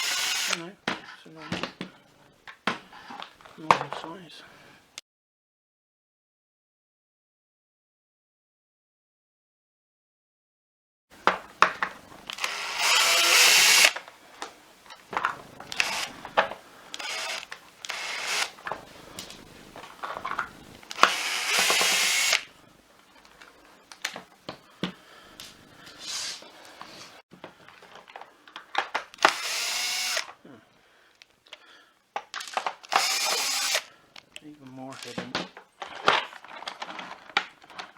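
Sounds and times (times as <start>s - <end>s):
electric screwdriver whirring: 0.0s - 0.6s, 11.8s - 14.0s, 15.6s - 18.8s, 20.7s - 22.5s, 29.2s - 30.4s, 32.8s - 33.9s
clicks of screws and plastic: 32.2s - 37.9s.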